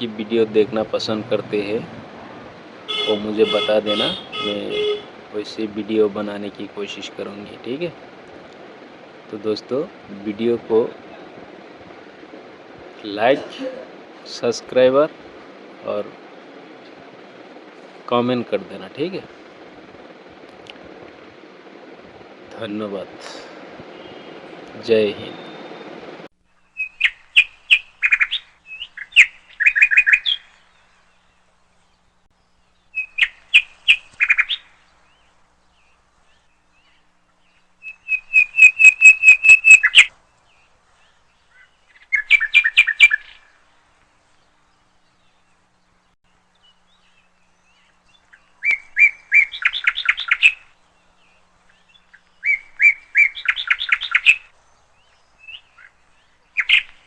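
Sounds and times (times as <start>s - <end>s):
small bird chirping: 26.5s - 43.7s, 44.3s - 57.0s.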